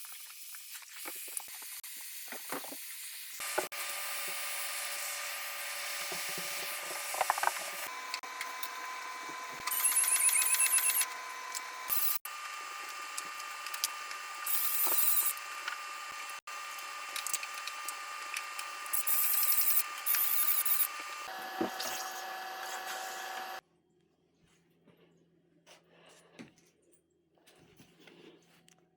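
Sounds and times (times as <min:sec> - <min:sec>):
small power tool humming: 0:01.2 - 0:23.6
high-pitched buzzing: 0:17.2 - 0:23.6.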